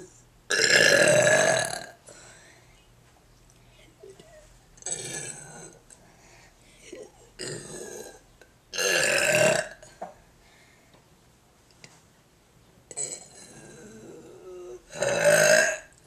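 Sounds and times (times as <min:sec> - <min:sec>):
person burping loudly: 0:00.5 - 0:02.0, 0:04.8 - 0:05.8, 0:07.4 - 0:10.0, 0:12.9 - 0:16.0.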